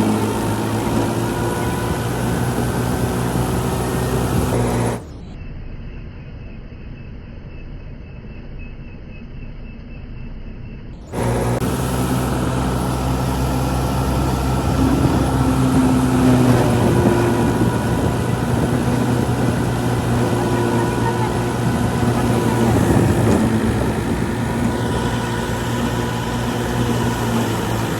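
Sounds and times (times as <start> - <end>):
combine harvester engine drone: 0.0 - 27.9.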